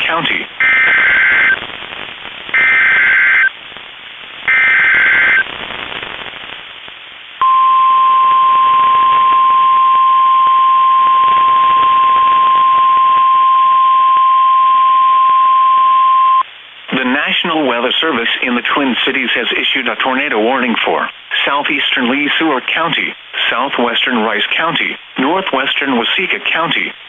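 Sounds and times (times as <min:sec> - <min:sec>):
radio hiss: 0:00.0 - 0:07.6, 0:16.4 - 0:27.0
digital data bursts: 0:00.6 - 0:01.6, 0:02.5 - 0:03.5, 0:04.5 - 0:05.5
steady warning alarm tone: 0:00.6 - 0:01.6, 0:02.6 - 0:03.5, 0:04.5 - 0:05.4.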